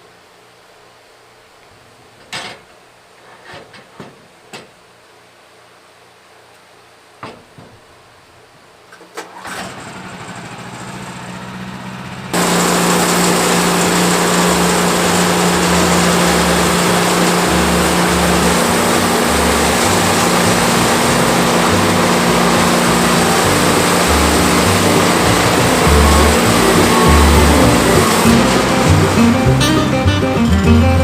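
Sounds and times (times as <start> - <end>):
gas engine running: 9.3 - 31.0.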